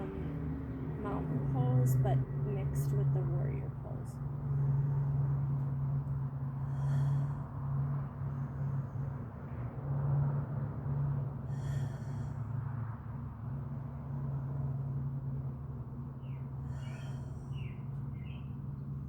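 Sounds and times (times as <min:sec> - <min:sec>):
steady low hum: 0:00.0 - 0:19.0
bird calls and chirps: 0:16.2 - 0:18.6.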